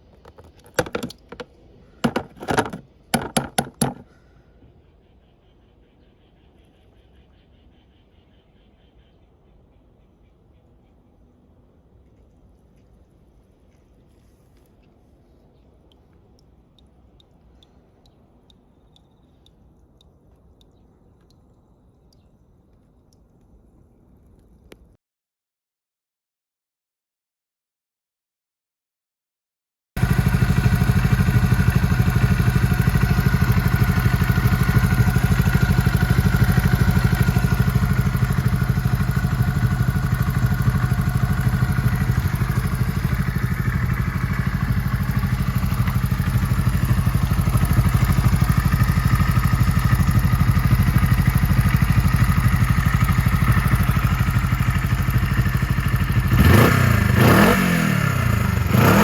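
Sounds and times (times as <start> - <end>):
motorcycle engine idling: 0.1 - 4.1, 30.0 - 59.0
engine revving: 49.9 - 59.0.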